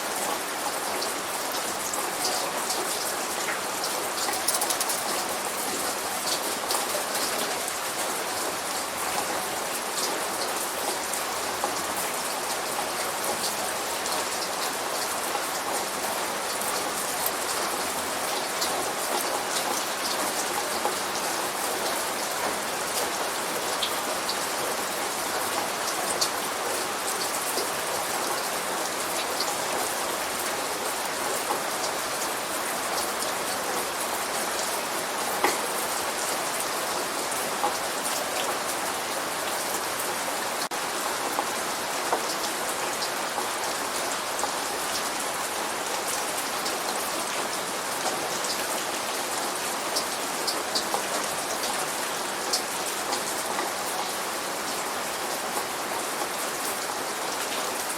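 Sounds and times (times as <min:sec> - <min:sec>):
light rain falling: 0:00.0 - 0:57.9.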